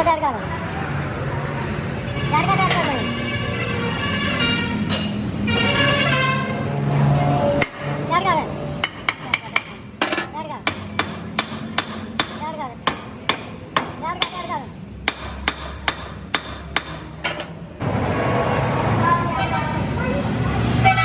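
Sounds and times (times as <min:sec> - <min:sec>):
hammer striking metal: 0:04.9 - 0:05.4, 0:08.8 - 0:17.6.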